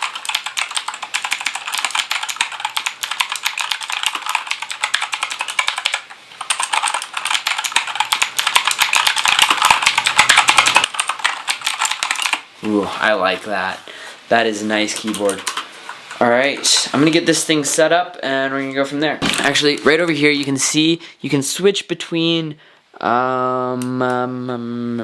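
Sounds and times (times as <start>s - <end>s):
mechanical keyboard typing: 0.0s - 12.5s, 14.8s - 15.7s.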